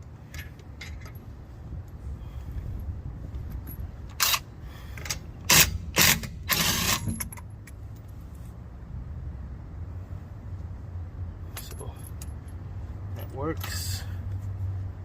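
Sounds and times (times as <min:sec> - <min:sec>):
impact wrench bursts: 0:05.0 - 0:07.3.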